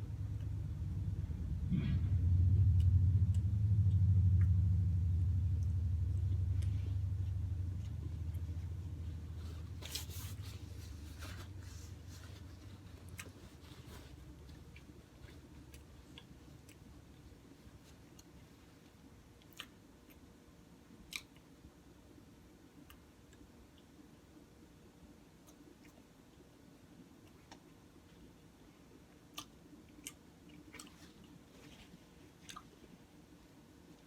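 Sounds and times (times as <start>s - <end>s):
low rumble: 0.0s - 14.5s
eating clicks and crunching: 12.6s - 21.6s, 25.4s - 28.3s, 28.9s - 33.3s.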